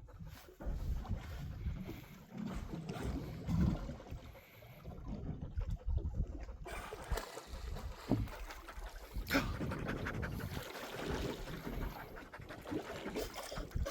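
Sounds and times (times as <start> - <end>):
wind and water rumble: 0.0 - 13.9
dog panting: 8.3 - 13.9.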